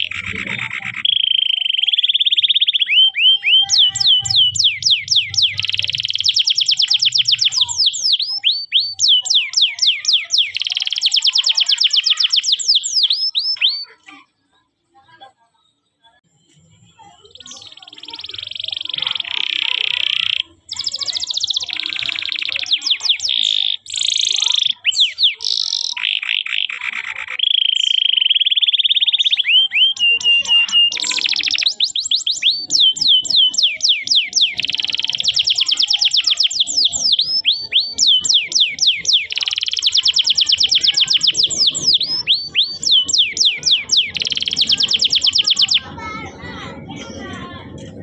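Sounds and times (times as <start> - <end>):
canary singing trills: 0.0 - 48.0.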